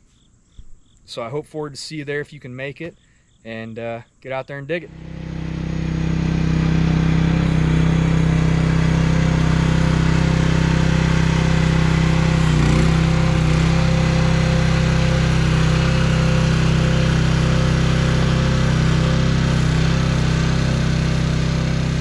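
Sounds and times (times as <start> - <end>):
excavator engine running: 4.8 - 22.0.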